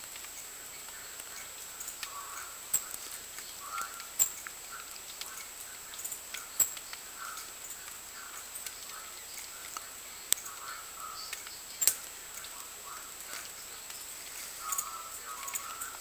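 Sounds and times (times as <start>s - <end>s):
birds tapping and clicking: 0.0s - 16.0s
soft bird calls: 0.0s - 16.0s.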